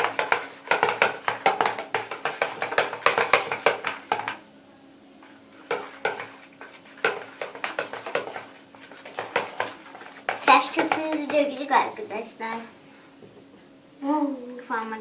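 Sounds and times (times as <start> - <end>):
spoon stirring slime in bowl: 0.0 - 4.4, 5.2 - 12.0.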